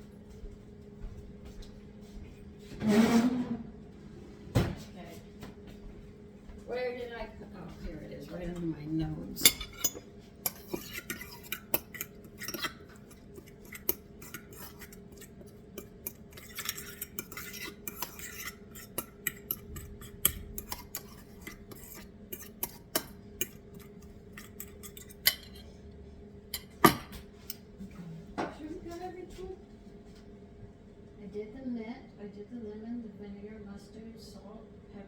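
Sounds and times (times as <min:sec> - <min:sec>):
fork stirring dressing: 0:08.2 - 0:25.7
fork clinking on bowl: 0:09.4 - 0:25.6, 0:26.5 - 0:27.6.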